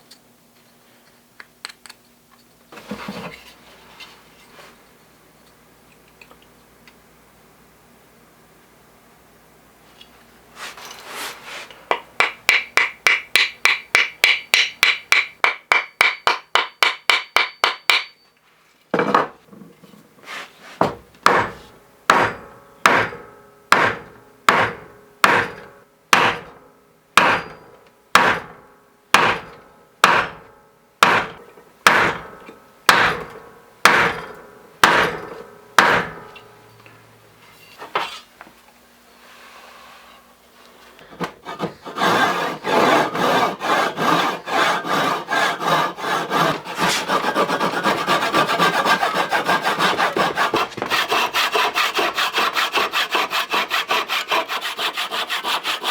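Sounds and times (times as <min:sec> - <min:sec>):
hammer striking metal with ringing: 0:12.2 - 0:18.3, 0:22.1 - 0:25.6, 0:26.2 - 0:26.5, 0:27.2 - 0:28.5, 0:29.2 - 0:36.5.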